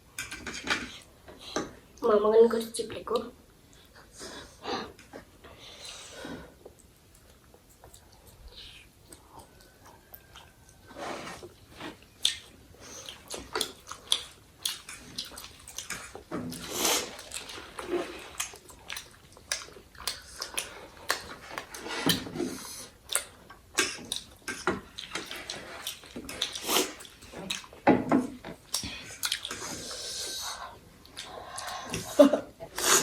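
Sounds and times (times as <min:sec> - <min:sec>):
people chewing food: 0:00.0 - 0:02.0, 0:03.5 - 0:33.0
wet mouth noises: 0:06.7 - 0:27.8, 0:28.7 - 0:33.0.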